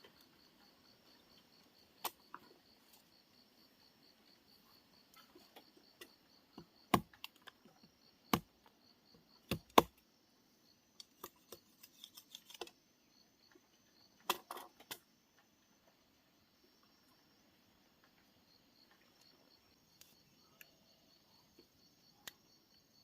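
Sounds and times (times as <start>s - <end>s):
faint pulsing insect chirp: 0.0s - 23.0s.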